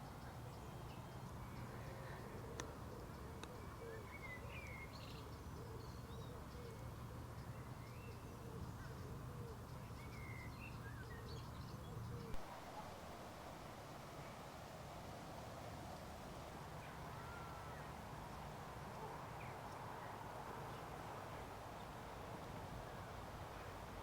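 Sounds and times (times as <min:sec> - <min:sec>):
small birds chirping: 0:00.0 - 0:14.4
low steady hum: 0:00.0 - 0:24.0.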